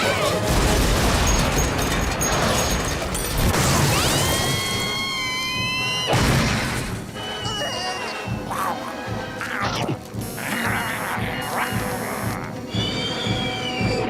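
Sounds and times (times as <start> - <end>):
cartoon whistling tones: 7.2 - 8.8, 12.7 - 14.0.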